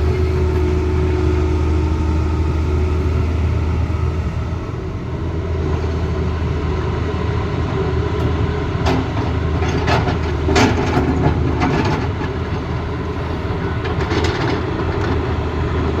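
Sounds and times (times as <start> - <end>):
excavator diesel engine running: 0.0 - 16.0
metallic clanks and knocks: 8.8 - 12.6.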